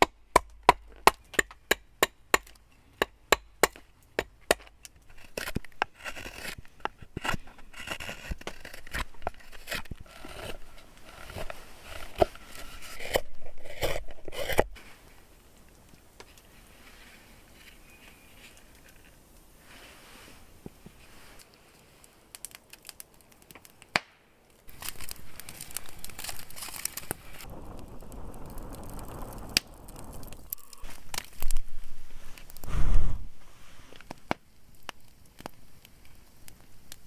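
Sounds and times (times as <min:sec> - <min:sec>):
blade scraping and shaving wood: 0:00.9 - 0:15.0, 0:24.7 - 0:27.5.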